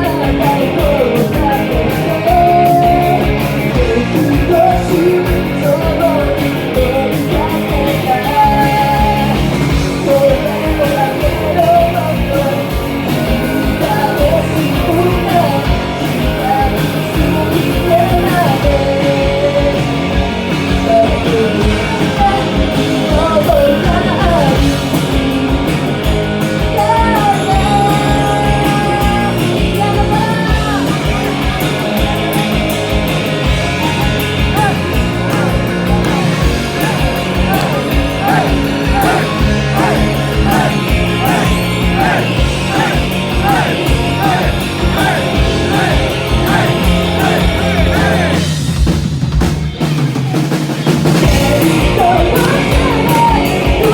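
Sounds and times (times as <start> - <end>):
woman singing: 0.0 - 20.1, 20.7 - 25.6, 26.6 - 31.6, 51.2 - 53.9
rock guitar and drums: 0.0 - 53.9.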